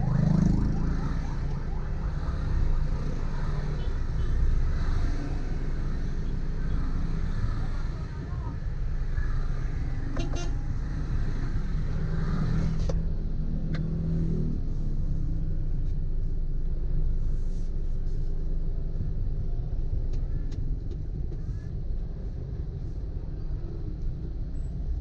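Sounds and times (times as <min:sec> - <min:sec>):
vehicle rumbling on road: 0:00.0 - 0:25.0.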